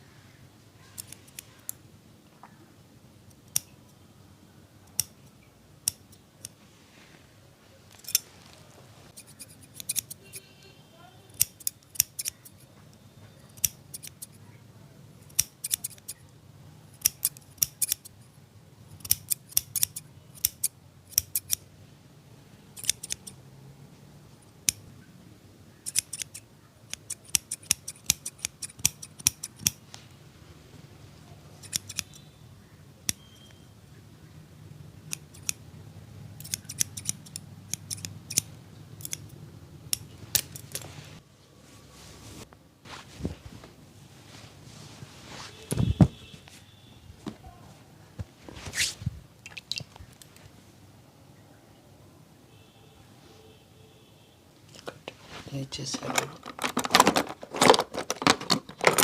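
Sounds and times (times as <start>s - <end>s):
scissors snipping hair: 1.0s - 1.8s, 9.1s - 10.4s, 11.3s - 12.6s, 13.6s - 14.4s, 15.3s - 16.2s, 16.9s - 18.1s, 19.0s - 21.6s, 22.8s - 23.4s, 25.8s - 29.8s, 31.6s - 32.2s, 35.1s - 35.6s, 36.4s - 39.3s, 39.9s - 40.9s.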